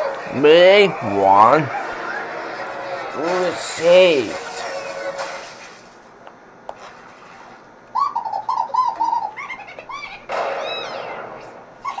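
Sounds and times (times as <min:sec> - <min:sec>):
falling whistles: 0:08.0 - 0:12.0.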